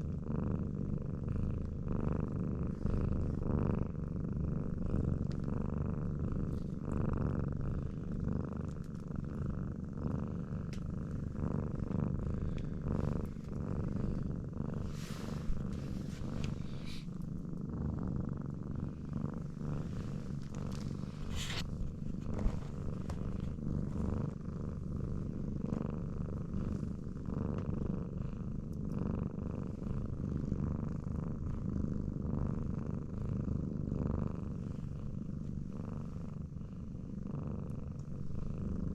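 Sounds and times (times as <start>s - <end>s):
cat purring: 0.0s - 38.9s
faint clicks: 10.7s - 10.9s.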